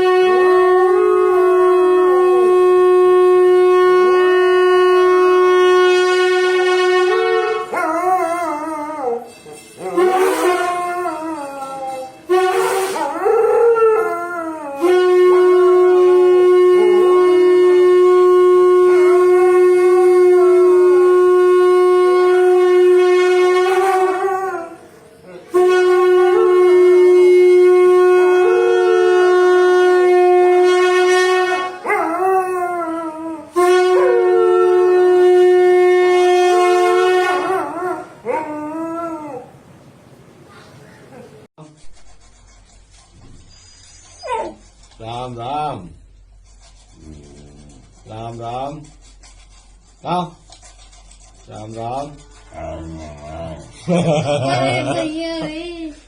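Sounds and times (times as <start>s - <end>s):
conch shell blasts: 0.0s - 39.0s
dog howling: 7.2s - 17.7s, 31.7s - 35.3s, 37.1s - 39.6s.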